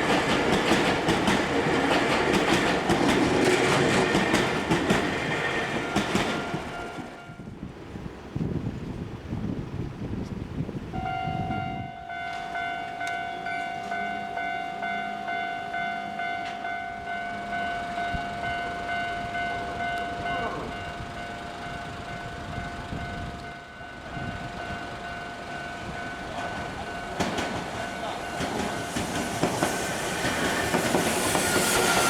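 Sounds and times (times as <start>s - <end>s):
electric train rumble and wheel clatter: 0.0s - 32.0s
level crossing warning bell: 5.1s - 7.5s, 11.0s - 29.6s.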